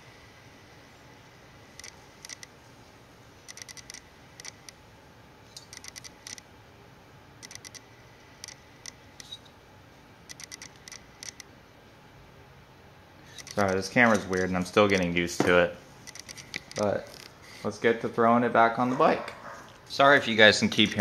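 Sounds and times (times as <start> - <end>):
camera autofocus motor clicking: 1.8 - 2.5, 3.5 - 4.8, 5.7 - 6.4, 7.4 - 7.8, 8.4 - 9.4, 10.3 - 11.5, 13.3 - 13.7, 16.0 - 17.3.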